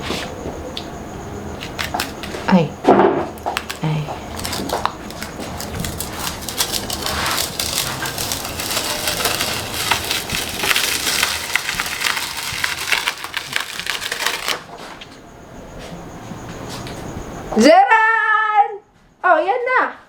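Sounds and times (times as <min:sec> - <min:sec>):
paper and tape crackling: 0:01.6 - 0:02.5, 0:03.3 - 0:15.0.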